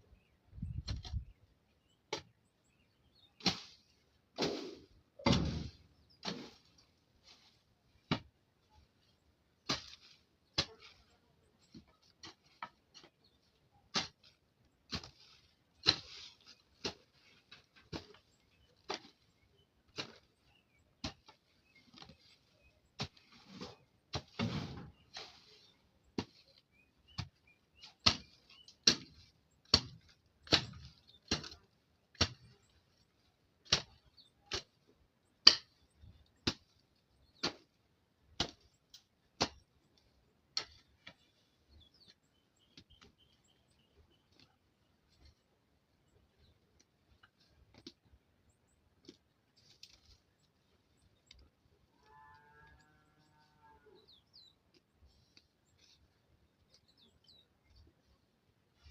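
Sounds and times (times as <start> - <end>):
weeding tool chopping soil: 3.4 - 6.7, 9.6 - 11.1, 11.7 - 19.2, 19.8 - 43.0.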